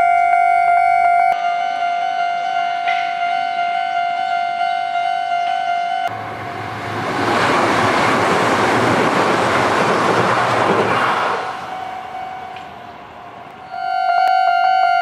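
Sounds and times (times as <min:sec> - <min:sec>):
electric train passing: 0:02.1 - 0:15.0
wheel and rail noise: 0:06.1 - 0:15.0
level crossing warning chime: 0:11.6 - 0:12.6, 0:13.7 - 0:15.0.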